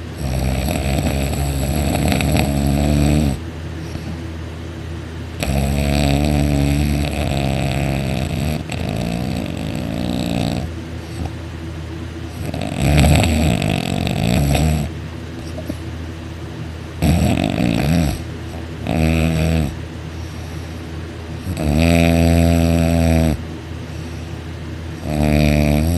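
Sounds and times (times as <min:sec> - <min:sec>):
man snoring loudly: 0:00.2 - 0:03.4, 0:05.4 - 0:11.3, 0:12.4 - 0:15.0, 0:17.0 - 0:19.8, 0:21.4 - 0:23.4, 0:25.0 - 0:25.9
quiet breathing: 0:03.7 - 0:04.4, 0:20.0 - 0:21.1, 0:23.8 - 0:24.6.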